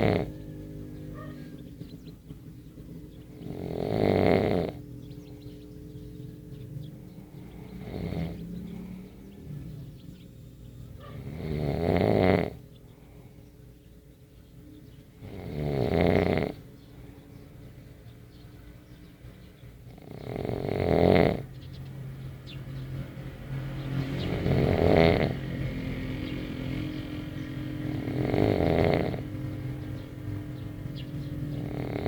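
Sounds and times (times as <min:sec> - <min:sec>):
person snoring: 0:00.0 - 0:00.3, 0:03.4 - 0:04.8, 0:07.6 - 0:09.0, 0:11.2 - 0:12.6, 0:15.2 - 0:16.6, 0:19.9 - 0:21.5, 0:24.3 - 0:25.4, 0:27.9 - 0:29.2, 0:31.6 - 0:32.0.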